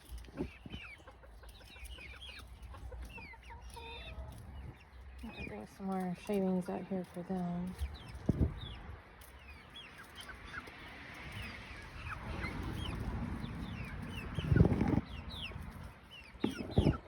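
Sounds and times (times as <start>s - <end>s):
chicks peeping: 0.0s - 17.0s
rustle: 0.0s - 17.0s.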